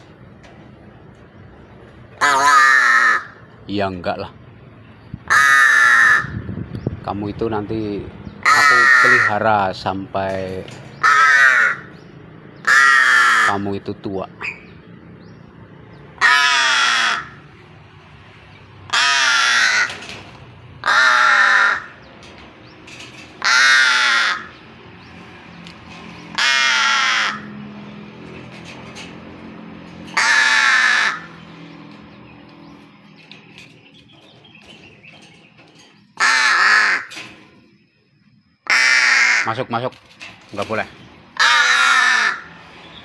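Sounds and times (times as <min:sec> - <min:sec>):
crow cawing harshly: 0:02.2 - 0:03.5, 0:05.3 - 0:06.4, 0:08.4 - 0:09.4, 0:11.0 - 0:12.0, 0:12.6 - 0:13.7, 0:16.2 - 0:17.6, 0:18.9 - 0:20.1, 0:20.8 - 0:22.0, 0:23.4 - 0:24.6, 0:26.2 - 0:27.7, 0:30.1 - 0:31.4, 0:36.2 - 0:37.2, 0:38.6 - 0:39.7, 0:41.3 - 0:42.6.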